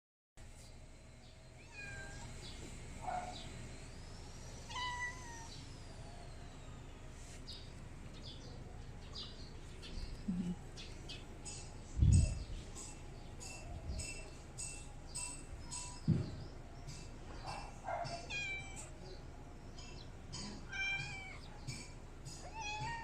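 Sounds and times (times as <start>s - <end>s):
cat meowing: 1.6s - 2.4s, 4.7s - 5.5s, 18.3s - 18.9s, 20.7s - 21.4s, 22.5s - 23.0s.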